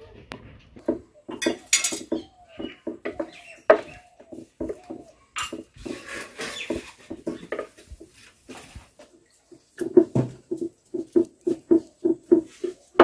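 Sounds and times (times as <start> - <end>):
kitchen utensils knocking and clinking: 0.8 - 8.2.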